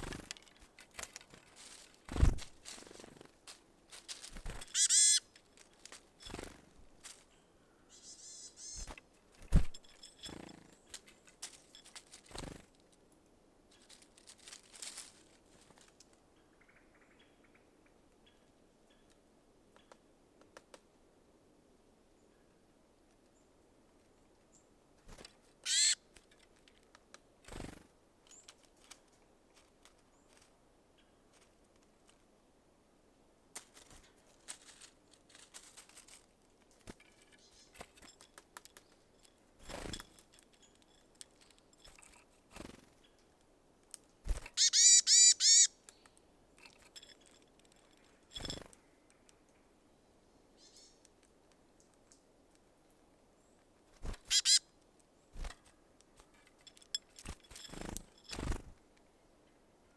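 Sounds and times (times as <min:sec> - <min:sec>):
small birds calling: 0:04.4 - 0:05.3, 0:07.1 - 0:09.0, 0:25.6 - 0:26.0, 0:44.5 - 0:46.3, 0:50.1 - 0:51.1, 0:54.0 - 0:55.5.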